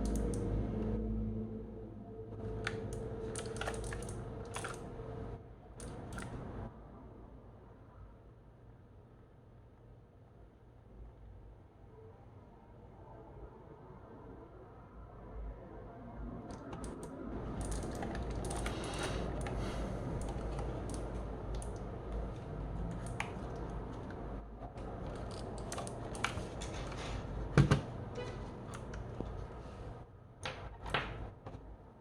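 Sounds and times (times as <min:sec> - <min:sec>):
mechanical keyboard key clicks: 0:00.0 - 0:00.4, 0:02.7 - 0:04.9, 0:05.8 - 0:06.4, 0:16.5 - 0:19.6.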